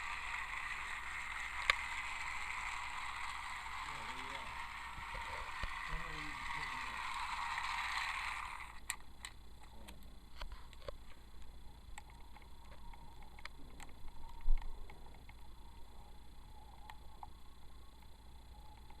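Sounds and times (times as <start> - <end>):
toy train motor whirring: 0.0 - 9.4.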